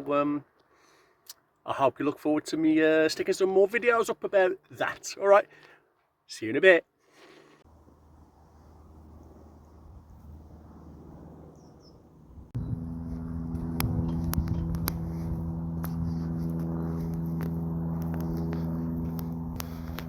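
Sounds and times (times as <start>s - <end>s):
faint low hum: 12.6s - 20.0s
motor drone: 12.6s - 20.0s.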